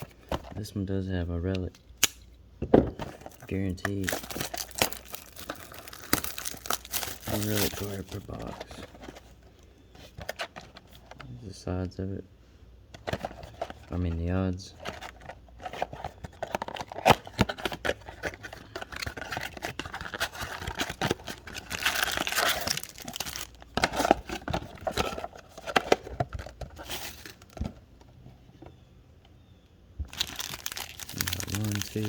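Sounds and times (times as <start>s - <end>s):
plastic wrapping crinkling and tearing: 3.4s - 8.6s, 18.9s - 23.8s, 30.1s - 32.0s.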